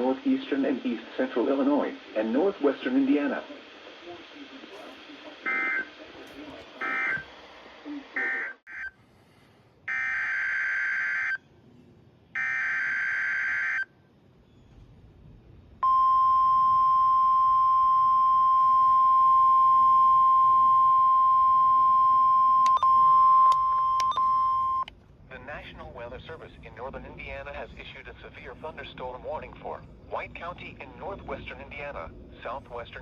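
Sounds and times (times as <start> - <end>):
piercing warning alarm tone: 5.4 - 6.0, 6.8 - 7.3, 8.2 - 9.0, 9.9 - 11.4, 12.4 - 13.9, 15.8 - 24.9.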